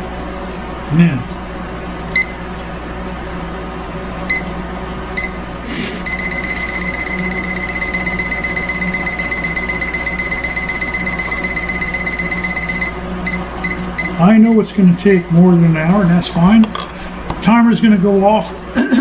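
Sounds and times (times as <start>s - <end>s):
timer button beeps: 2.2s - 2.4s, 4.3s - 4.5s, 6.1s - 15.3s
fast beeping timer alarm: 4.3s - 4.5s, 5.2s - 5.4s, 6.0s - 15.5s.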